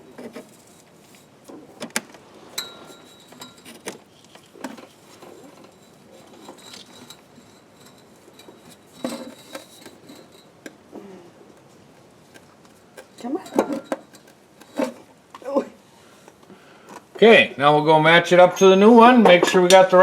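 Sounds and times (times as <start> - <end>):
metal clinks and knocks: 2.5 - 4.0.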